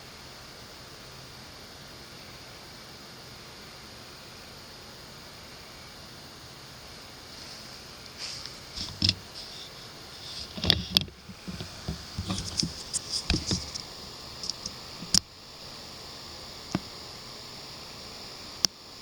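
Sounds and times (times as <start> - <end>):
night insects chirring: 0.1 - 19.0
close knocks and rustles: 7.5 - 15.3.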